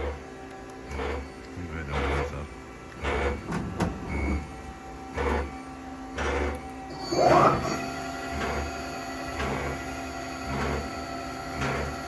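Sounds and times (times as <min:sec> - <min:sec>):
lathe machine hum: 0:00.0 - 0:12.0
rhythmic machine pulse: 0:03.0 - 0:03.5, 0:05.1 - 0:05.6.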